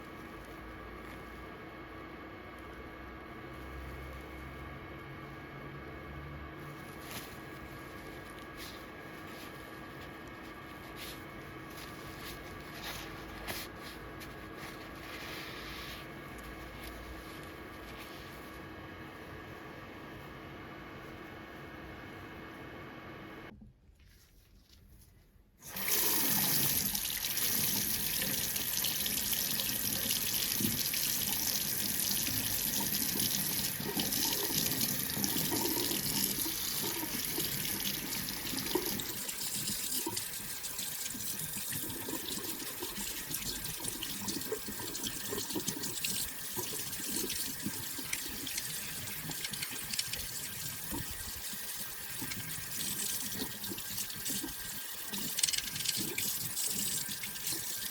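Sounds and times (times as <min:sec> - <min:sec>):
tap water running into sink: 0:25.7 - 0:57.9.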